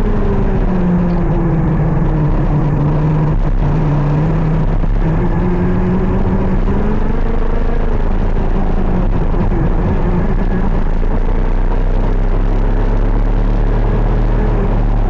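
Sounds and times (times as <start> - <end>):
heavy low rumble: 0.0 - 15.0
kart engine running hard: 0.0 - 15.0.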